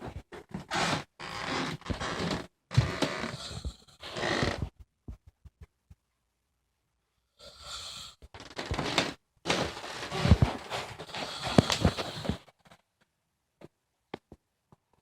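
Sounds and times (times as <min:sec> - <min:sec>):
woman snoring: 0:03.0 - 0:04.6, 0:07.4 - 0:08.2, 0:11.0 - 0:12.4.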